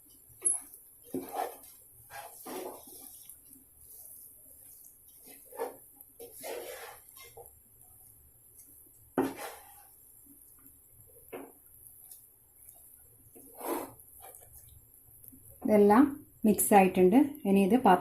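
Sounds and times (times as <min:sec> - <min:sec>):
spoon scraping a pot: 0:00.4 - 0:04.2, 0:04.8 - 0:07.5, 0:09.2 - 0:10.0, 0:12.1 - 0:14.6.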